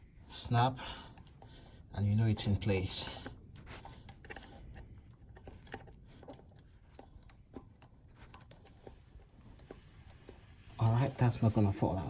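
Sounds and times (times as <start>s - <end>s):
small metal parts clicking: 2.3s - 11.2s.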